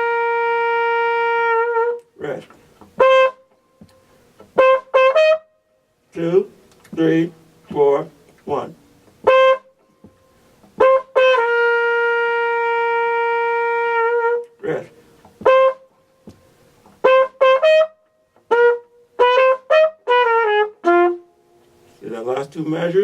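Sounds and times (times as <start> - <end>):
flugelhorn playing: 0.0 - 22.5.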